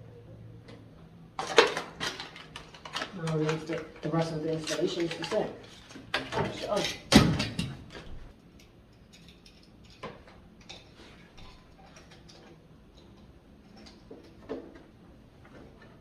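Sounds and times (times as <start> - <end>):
metal lock parts clicking: 1.4 - 10.9.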